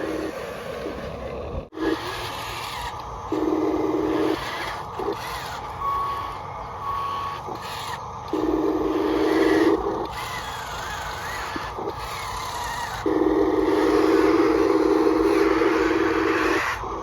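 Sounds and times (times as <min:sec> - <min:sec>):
motors whirring: 0:00.0 - 0:17.0
low buzzing tone: 0:01.7 - 0:17.0
high reversing beeps: 0:04.1 - 0:09.8.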